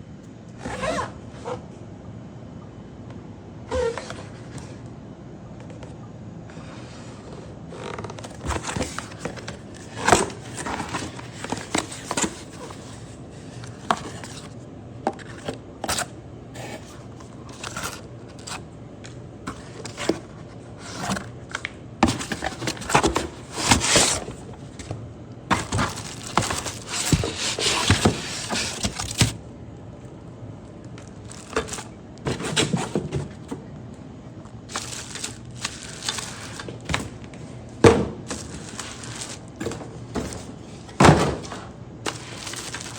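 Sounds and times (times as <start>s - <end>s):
rustling: 25.5s - 29.4s, 34.7s - 37.2s, 38.3s - 40.6s, 42.1s - 42.9s.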